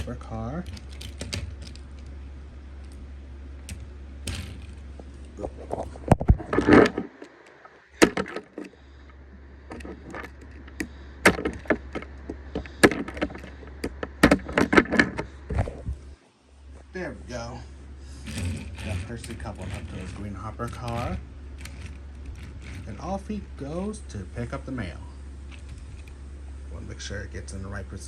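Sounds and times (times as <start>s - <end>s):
toy train pieces clattering: 0.0s - 2.2s, 3.6s - 8.7s, 18.2s - 23.3s, 25.5s - 26.2s
low hum: 0.0s - 28.0s.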